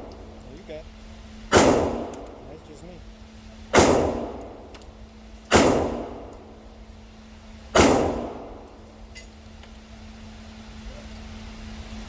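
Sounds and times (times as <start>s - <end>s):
pistol shots ringing: 1.5s - 2.4s, 3.7s - 4.9s, 5.5s - 6.5s, 7.8s - 8.8s.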